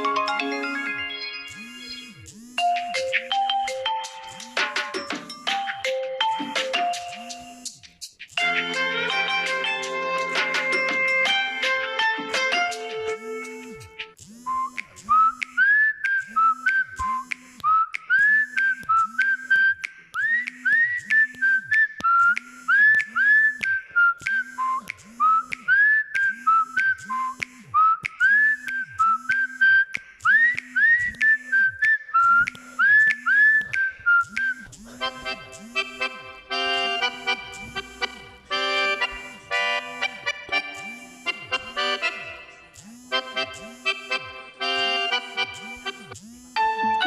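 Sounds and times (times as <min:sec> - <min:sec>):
whistle ringtone melody: 0:00.0 - 0:07.8, 0:14.4 - 0:46.0
low repeating beat: 0:02.2 - 0:15.6, 0:31.8 - 0:47.0.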